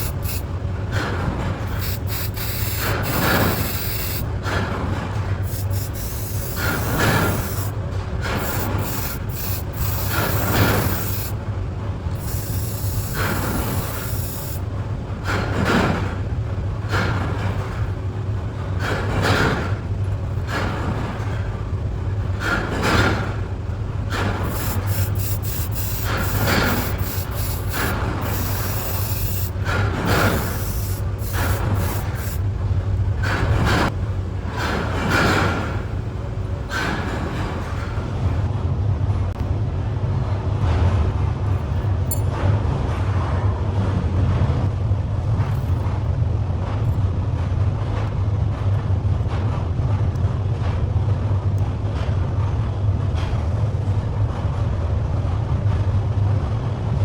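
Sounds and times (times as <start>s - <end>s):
rubbing on abrasive surface: 0.0s - 0.5s, 1.6s - 4.3s, 5.4s - 7.7s, 8.4s - 11.4s, 12.1s - 14.7s, 24.4s - 32.5s
steady low hum: 0.0s - 38.6s.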